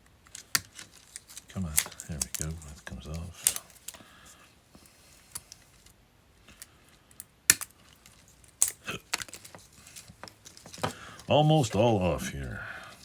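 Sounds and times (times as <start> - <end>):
brittle plastic cracking and snapping: 0.2 - 4.1, 6.5 - 11.3.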